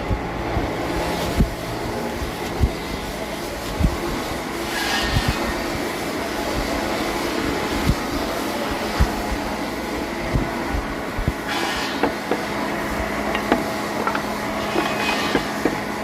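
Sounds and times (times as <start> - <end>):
sawmill machinery humming: 8.3 - 16.0.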